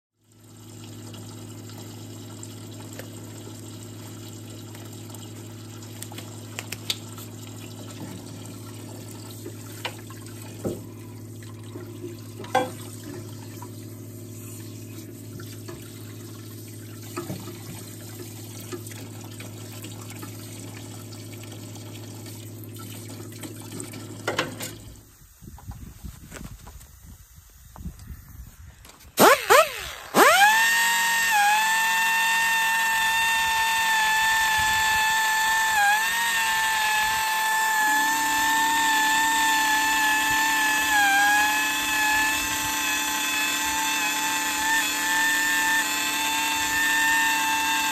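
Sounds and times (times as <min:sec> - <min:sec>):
liquid running: 0:00.2 - 0:25.0.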